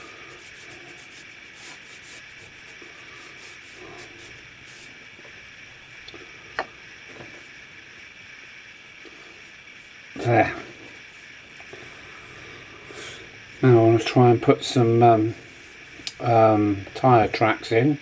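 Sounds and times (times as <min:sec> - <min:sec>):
brush rubbing on damp card: 0:00.0 - 0:05.0, 0:11.0 - 0:11.4, 0:15.3 - 0:16.0.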